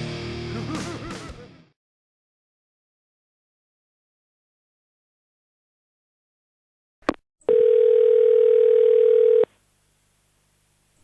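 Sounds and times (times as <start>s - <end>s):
telephone ringback tone: 7.5s - 9.5s.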